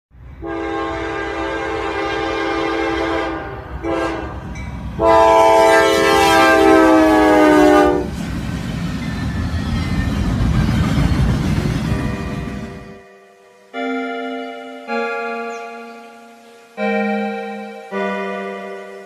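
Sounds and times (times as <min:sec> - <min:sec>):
air horn chord blasts: 0:00.4 - 0:08.1.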